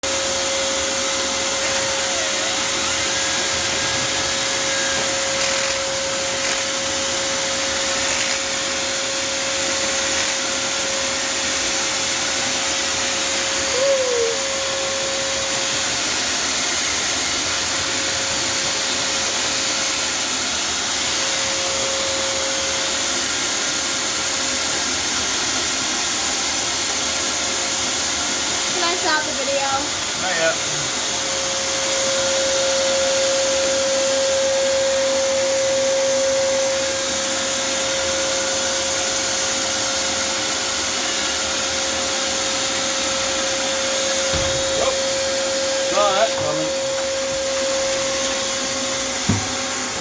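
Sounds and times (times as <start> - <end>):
electric motor whining: 0.1 - 18.4, 28.7 - 50.0.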